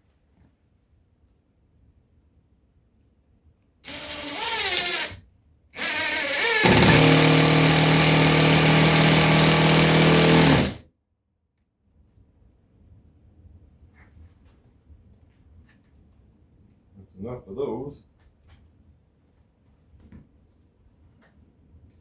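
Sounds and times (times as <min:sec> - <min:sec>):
power drill driving screws: 0:03.9 - 0:05.2, 0:05.8 - 0:10.8.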